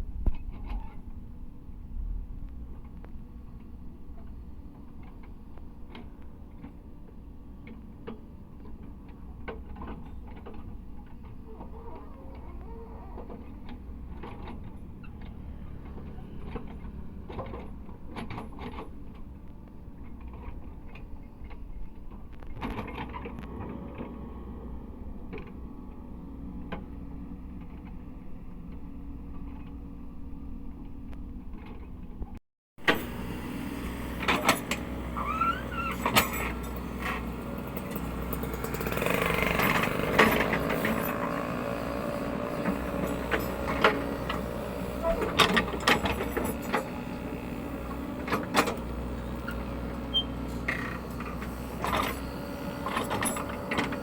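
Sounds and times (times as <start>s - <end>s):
excavator diesel engine running: 32.8s - 54.0s
metal clanks and knocks: 32.8s - 54.0s.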